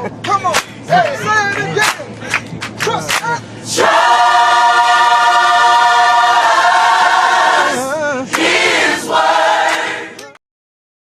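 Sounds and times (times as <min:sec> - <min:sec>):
choir singing gospel: 0:03.6 - 0:10.4.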